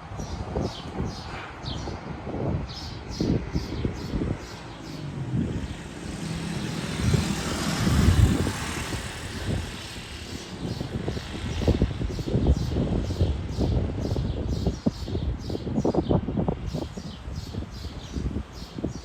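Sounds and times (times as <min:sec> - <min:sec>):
propeller aircraft flying over: 0:00.0 - 0:15.0
wind buffeting microphone: 0:00.0 - 0:19.0.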